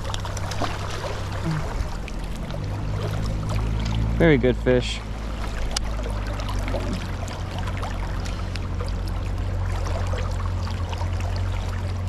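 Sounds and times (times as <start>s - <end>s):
river current rushing: 0.0s - 8.6s
small splashes: 0.0s - 12.0s.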